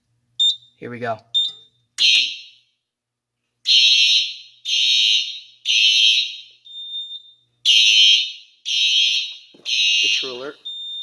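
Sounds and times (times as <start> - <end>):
fire alarm horns blasting: 1.4 - 2.8, 3.7 - 11.0.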